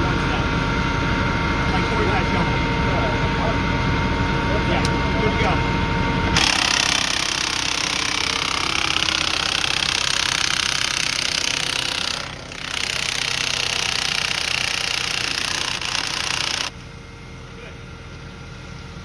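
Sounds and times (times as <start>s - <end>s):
power tool rattling: 6.4s - 16.7s.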